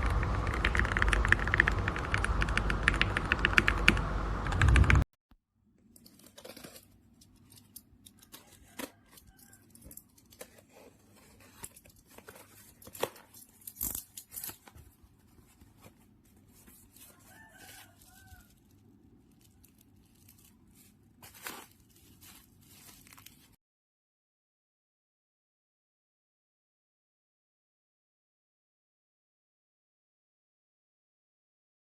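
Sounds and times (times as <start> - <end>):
packet tearing and rustling: 8.2 - 23.6.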